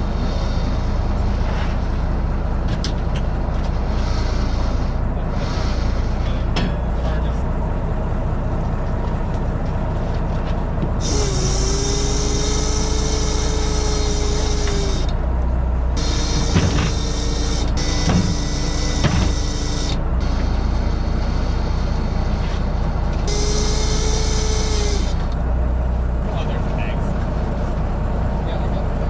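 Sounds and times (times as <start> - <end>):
engine running: 0.0 - 29.0
motor whine and hiss: 3.7 - 6.4, 11.0 - 15.2, 16.0 - 25.4.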